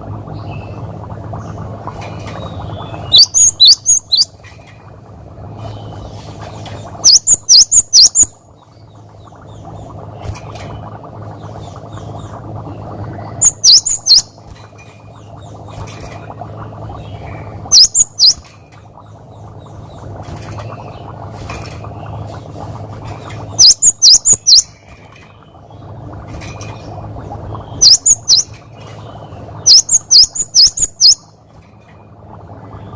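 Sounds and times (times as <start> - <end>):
steady low hum: 0.0 - 32.9
faint bird chirps: 2.1 - 4.3, 5.6 - 10.9, 11.6 - 14.4, 17.0 - 18.4, 23.6 - 25.8, 26.6 - 31.3.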